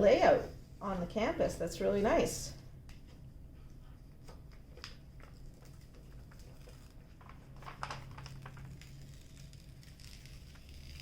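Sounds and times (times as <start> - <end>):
low steady hum: 0.0 - 11.0
paper rustling and clicks: 4.2 - 11.0.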